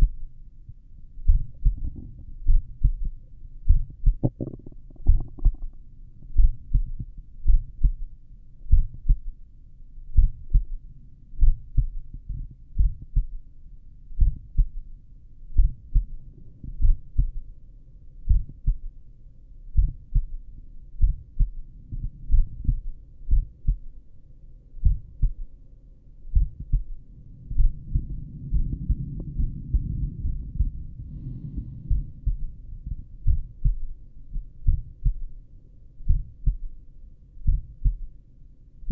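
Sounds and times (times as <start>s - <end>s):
heartbeat through stethoscope: 0.0s - 8.1s, 8.7s - 9.4s, 10.1s - 10.8s, 11.4s - 13.5s, 14.1s - 14.9s, 15.5s - 17.5s, 18.2s - 19.0s, 19.7s - 24.0s, 24.8s - 25.5s, 26.3s - 35.4s, 36.0s - 36.8s, 37.4s - 38.2s
low rumbling noise: 0.0s - 38.9s.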